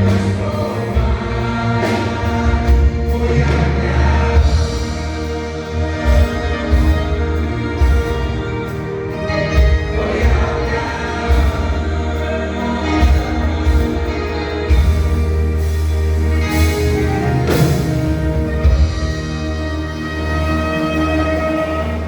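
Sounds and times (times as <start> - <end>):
keyboard chords: 0.0 - 22.0
pulsing bass line: 0.0 - 22.0.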